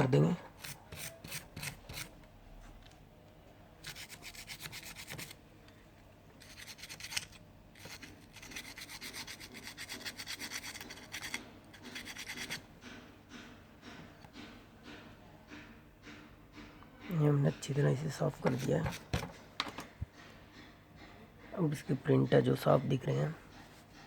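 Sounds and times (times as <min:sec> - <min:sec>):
rapid scrubbing on circuit board: 0:03.8 - 0:05.4, 0:06.4 - 0:12.7.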